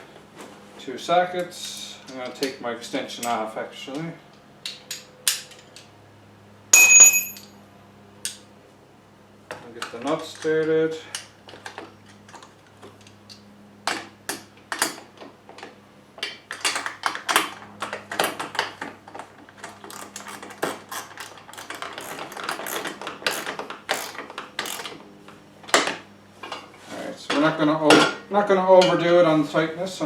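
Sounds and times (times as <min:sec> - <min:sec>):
metal clinks: 0:06.8 - 0:07.5
ratchet wrench clicking: 0:20.9 - 0:24.9.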